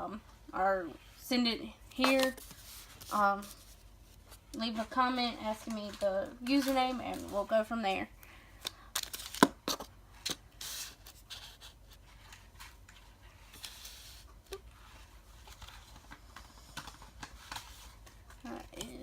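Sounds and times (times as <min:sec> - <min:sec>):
packaging crinkling and rustling: 0:08.6 - 0:19.0
blister packaging tearing: 0:08.9 - 0:10.4.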